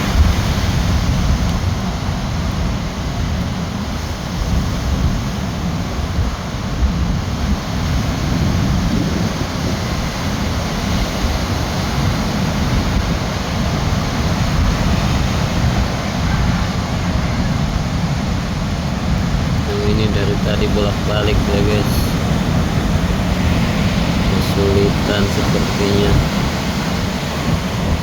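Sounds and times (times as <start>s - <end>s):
wind noise on microphone: 0.0s - 19.7s, 25.6s - 28.0s
surf breaking on beach: 0.0s - 28.0s.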